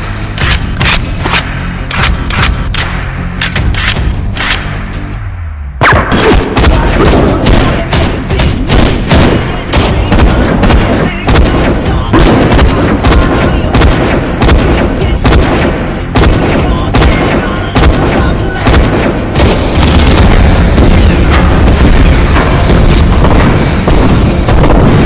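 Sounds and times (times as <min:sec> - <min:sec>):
music: 0:00.0 - 0:25.0
rapid gunfire and booms: 0:05.8 - 0:25.0.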